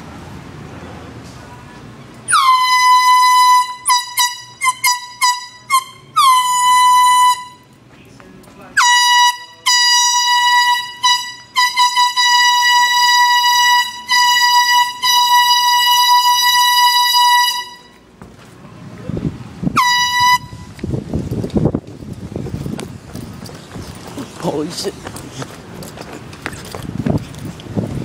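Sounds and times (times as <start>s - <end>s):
air horn blasts: 2.3s - 7.7s, 8.8s - 18.1s, 19.7s - 20.8s.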